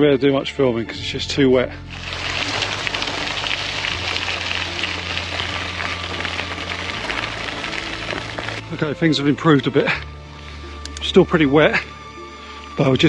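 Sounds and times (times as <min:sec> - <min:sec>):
heavy rain falling: 0:01.9 - 0:08.7.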